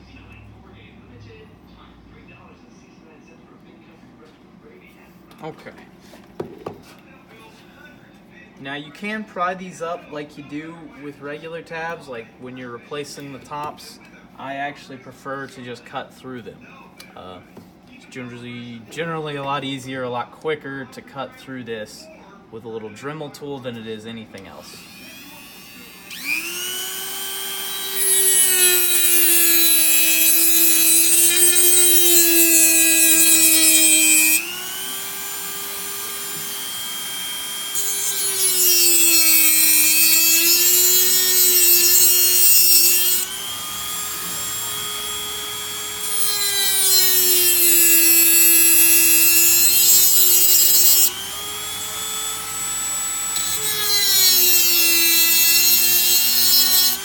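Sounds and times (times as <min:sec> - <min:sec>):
harsh grinding hiss of cutting: 0:24.6 - 0:57.0
rotary tool motor whining: 0:24.6 - 0:57.0.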